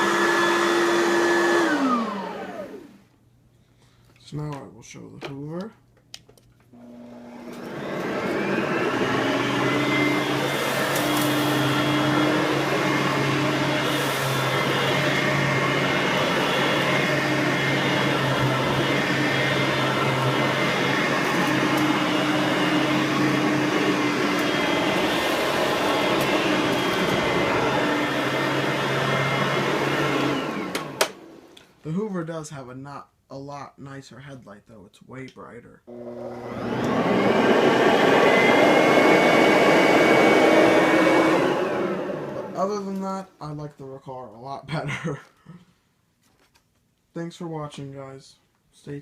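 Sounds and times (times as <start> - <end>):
vacuum cleaner motor running: 0.0 - 3.0, 6.8 - 31.6, 35.9 - 42.9.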